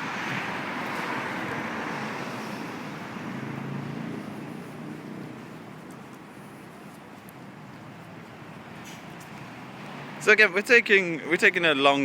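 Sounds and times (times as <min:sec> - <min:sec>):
car driving past: 0:00.0 - 0:05.5.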